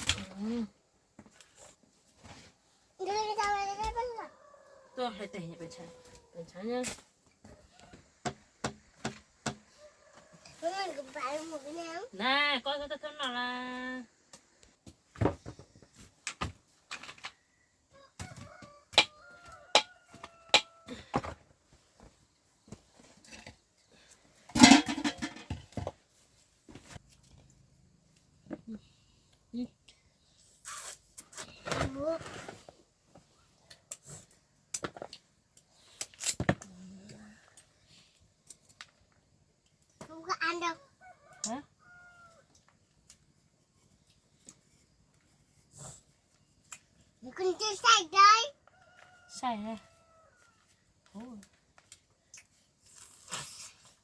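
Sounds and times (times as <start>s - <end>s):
objects clicking and knocking: 24.5s - 26.0s.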